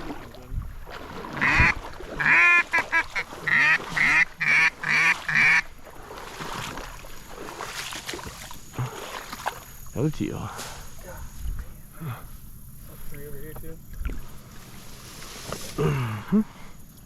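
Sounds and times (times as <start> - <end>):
duck quacking: 1.4 - 5.7.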